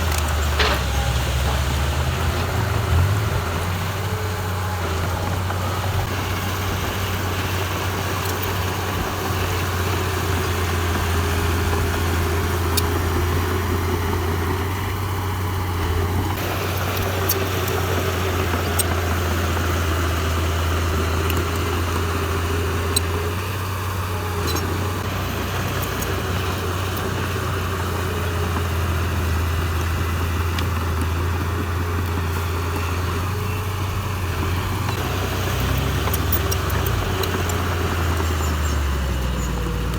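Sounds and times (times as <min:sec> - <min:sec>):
heavy machinery diesel engine: 0:00.0 - 0:39.9
sharp clicks: 0:34.7 - 0:39.9.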